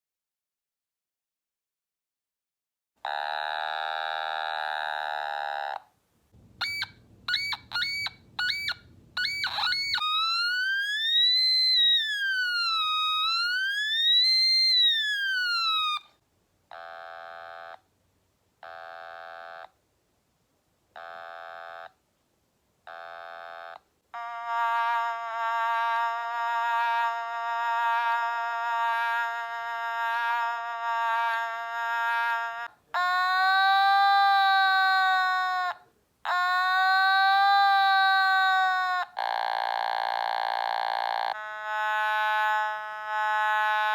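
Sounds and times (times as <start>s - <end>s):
siren-like wail: 6.6s - 16.0s.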